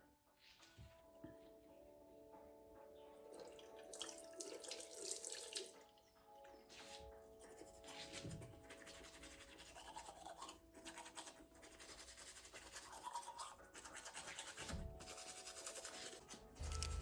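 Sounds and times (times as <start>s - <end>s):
toothbrush scrubbing teeth: 6.6s - 17.0s.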